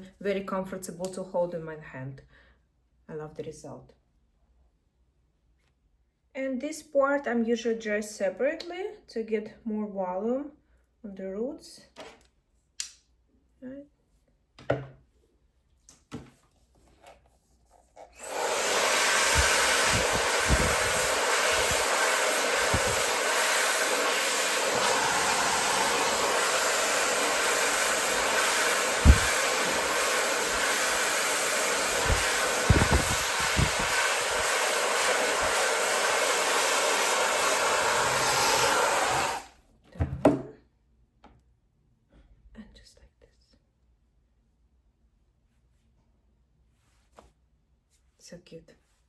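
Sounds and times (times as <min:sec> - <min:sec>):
hair dryer whining: 0:18.1 - 0:39.5.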